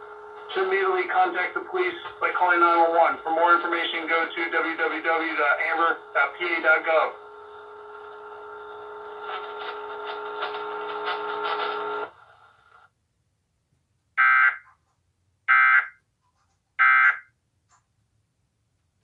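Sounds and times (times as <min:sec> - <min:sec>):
steady buzzing tone: 0:00.0 - 0:12.1.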